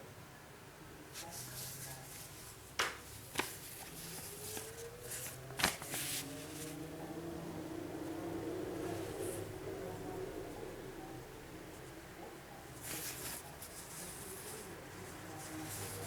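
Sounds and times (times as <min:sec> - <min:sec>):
packaging rustling: 0:03.2 - 0:06.7.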